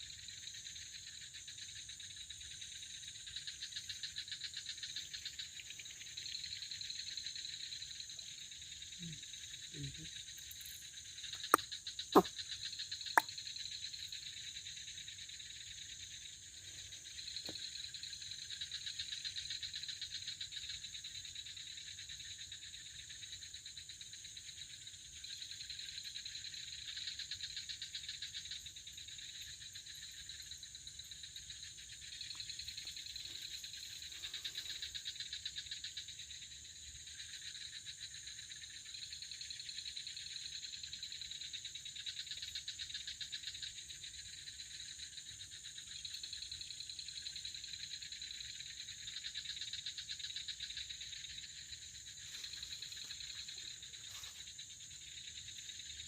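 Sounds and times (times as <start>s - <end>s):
insects trilling: 0.0s - 56.0s.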